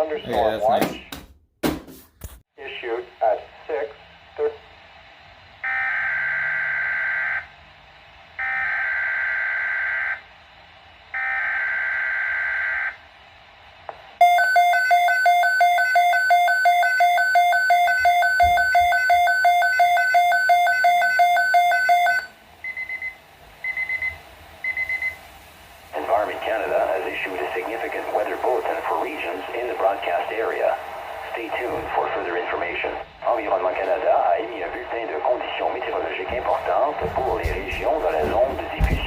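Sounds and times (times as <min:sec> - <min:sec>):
electronic alarm beeping rapidly: 0:14.2 - 0:25.2
short beeps: 0:14.2 - 0:25.2.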